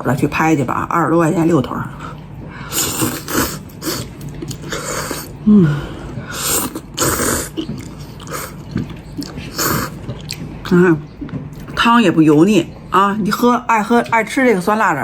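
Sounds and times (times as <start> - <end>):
person slurping noodles: 2.7 - 10.0.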